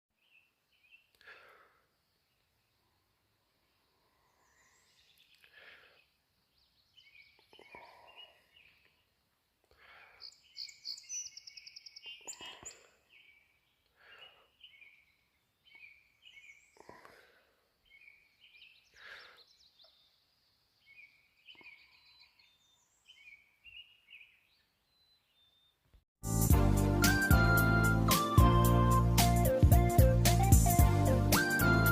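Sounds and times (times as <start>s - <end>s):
soft outdoor background noise: 0.1s - 26.0s
songbird trilling: 10.2s - 13.3s.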